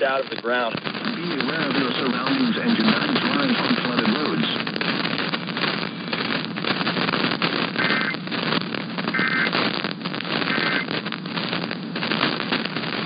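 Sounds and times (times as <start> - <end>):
crackling radio static: 0.0 - 13.0
two-tone data bursts: 7.0 - 11.6.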